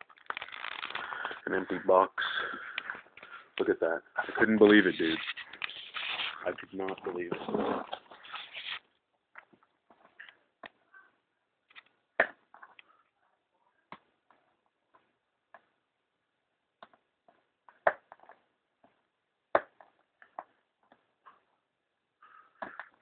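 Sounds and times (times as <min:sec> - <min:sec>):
cardboard packaging rustling: 0:00.0 - 0:01.5, 0:04.2 - 0:08.8.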